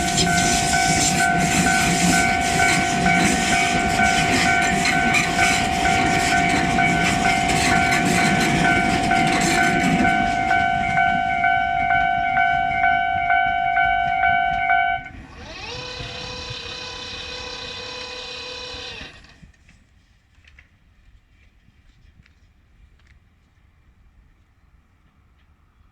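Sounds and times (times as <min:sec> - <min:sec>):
level crossing alarm ringing: 0:00.0 - 0:19.2
train rumble: 0:00.0 - 0:19.6.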